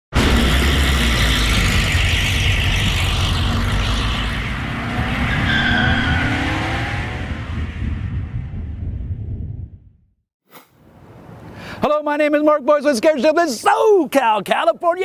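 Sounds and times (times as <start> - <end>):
engine revving hard: 0.1 - 8.3
tyres skidding: 0.2 - 7.9.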